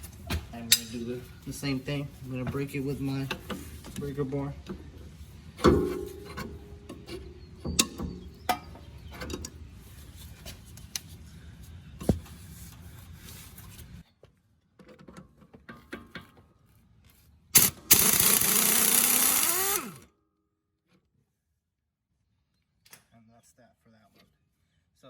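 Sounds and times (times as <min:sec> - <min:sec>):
tool scraping and clicking: 0:17.6 - 0:20.0
power impact wrench: 0:17.6 - 0:20.1.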